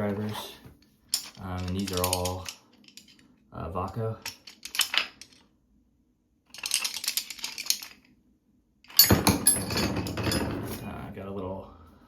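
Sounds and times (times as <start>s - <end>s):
metal hand tools rattling: 1.1s - 3.2s, 6.5s - 8.1s.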